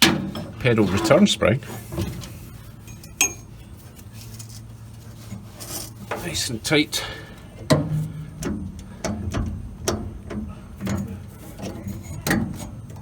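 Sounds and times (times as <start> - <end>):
light mechanical clicks and knocks: 7.2 - 13.0.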